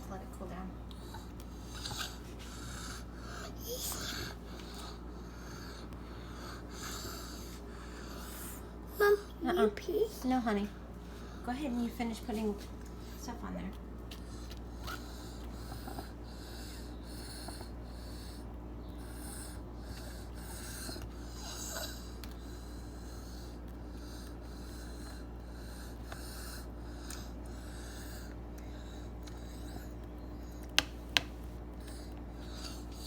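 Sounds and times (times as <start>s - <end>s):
wheezy snorting breaths: 0.9s - 9.4s, 10.0s - 13.5s, 14.1s - 30.9s, 31.7s - 33.0s.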